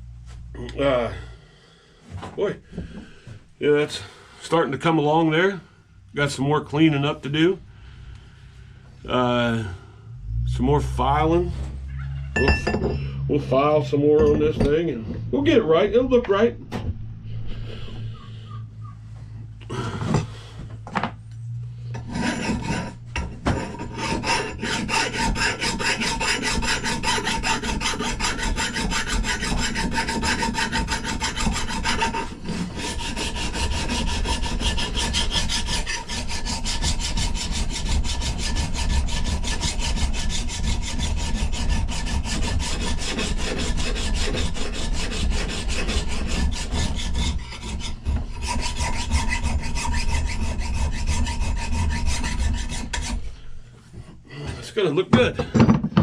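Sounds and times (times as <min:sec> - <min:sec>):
metal file rasping on axe head: 0:21.9 - 0:54.2.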